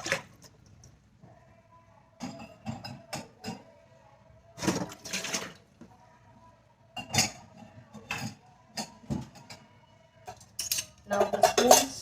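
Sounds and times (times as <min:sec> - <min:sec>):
dishes clinking into dishwasher rack: 0:10.6 - 0:12.0.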